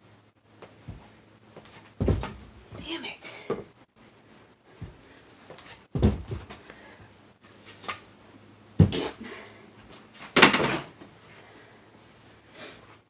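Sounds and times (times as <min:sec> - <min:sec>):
heavy thuds on carpet: 0:02.0 - 0:02.6, 0:05.9 - 0:06.6.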